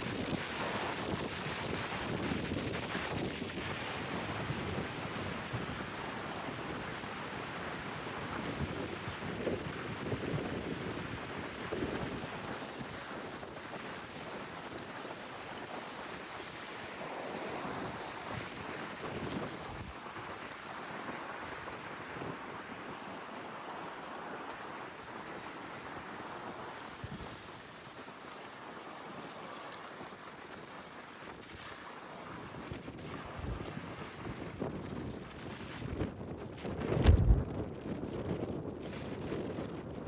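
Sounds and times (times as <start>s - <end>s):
wind buffeting microphone: 0.0s - 15.1s, 32.4s - 40.0s.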